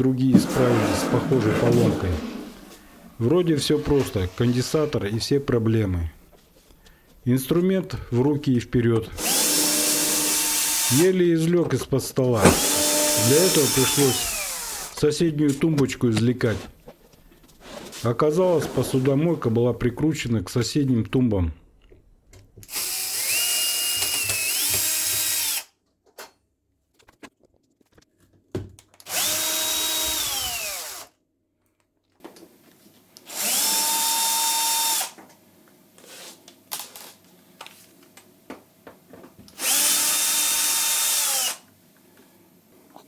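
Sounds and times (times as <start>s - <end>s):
electric drill whining: 9.2s - 11.0s, 12.4s - 15.0s, 22.7s - 25.7s, 29.1s - 31.1s, 33.2s - 35.2s, 39.6s - 41.7s.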